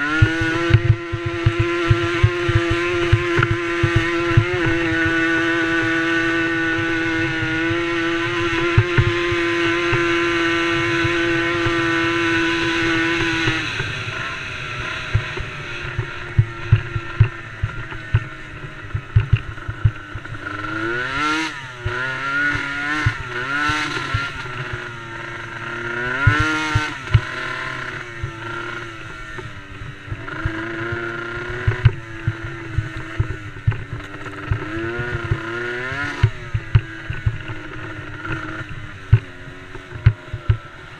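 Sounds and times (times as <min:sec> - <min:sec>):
small engine revving: 0:00.0 - 0:40.9
sharp knocks: 0:18.9 - 0:20.1.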